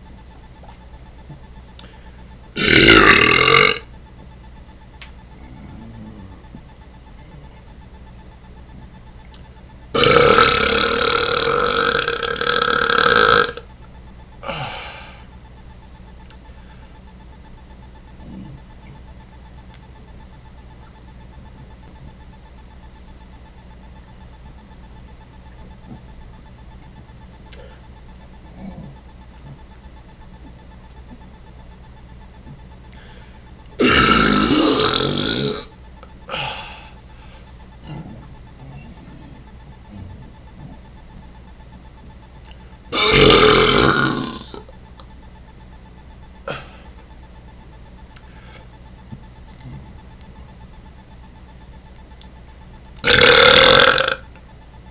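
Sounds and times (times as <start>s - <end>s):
man belching: 2.6s - 3.8s, 10.0s - 13.6s, 33.8s - 35.7s, 43.0s - 44.6s, 53.0s - 54.2s
person burping: 2.6s - 3.8s, 10.0s - 13.6s, 33.8s - 35.7s, 43.0s - 44.6s, 46.5s - 46.8s, 53.0s - 54.2s.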